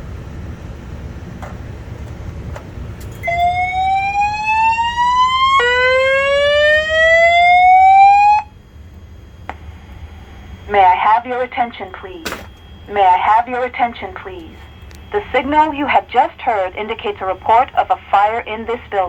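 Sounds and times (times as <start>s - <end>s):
fire alarm whoop tone: 3.1s - 8.6s.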